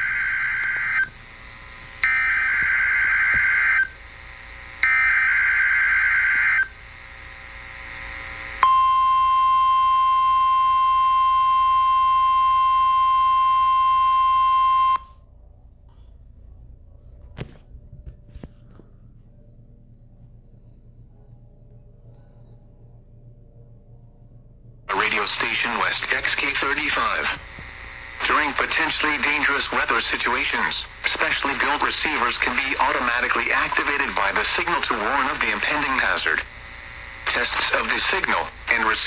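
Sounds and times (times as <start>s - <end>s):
warbling data tones: 0.0s - 15.0s, 24.9s - 39.0s
radio hiss: 0.0s - 15.1s, 24.9s - 39.0s
steady alarm tone: 0.0s - 15.2s, 19.8s - 39.0s.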